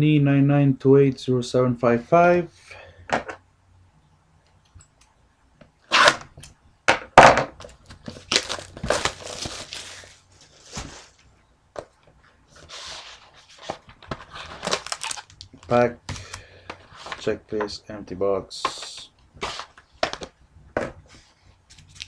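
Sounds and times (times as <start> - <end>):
wrapping tearing and crinkling: 7.6 - 11.2, 14.2 - 16.4.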